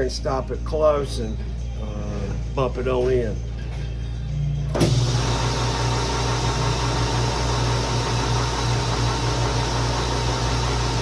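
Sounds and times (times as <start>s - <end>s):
metal lathe humming: 4.7s - 11.0s.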